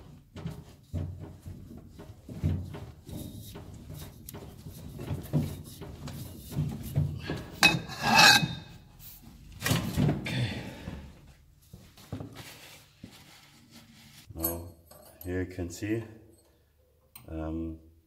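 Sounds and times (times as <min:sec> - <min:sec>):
rasping metal scrapes: 0:07.4 - 0:08.8.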